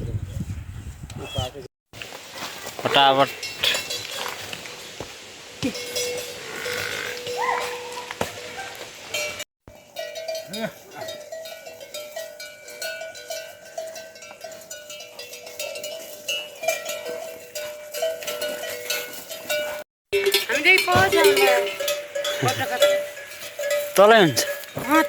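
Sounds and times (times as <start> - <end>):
metal neck bells clanking: 3.0 - 4.9, 5.6 - 25.0
wavering high animal call: 6.4 - 8.8.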